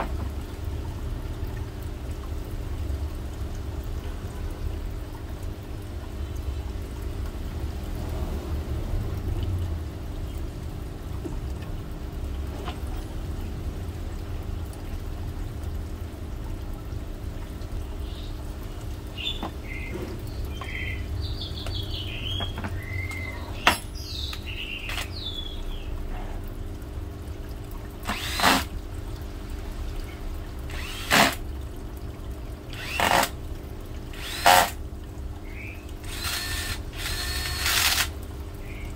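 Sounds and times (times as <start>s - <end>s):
electric drill bursts: 24.9s - 25.1s, 28.0s - 28.7s, 30.7s - 31.4s, 32.7s - 33.3s, 34.1s - 34.8s, 36.0s - 38.1s.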